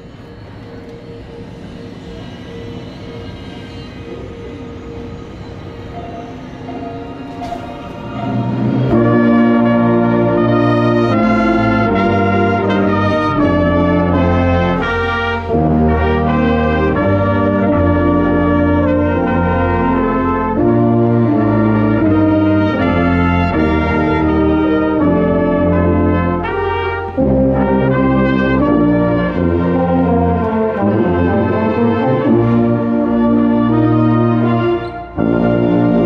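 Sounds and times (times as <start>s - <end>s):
brass sustained chords: 0.0s - 36.0s
wind ensemble playing: 0.0s - 36.0s
low tuba bass line: 7.4s - 36.0s.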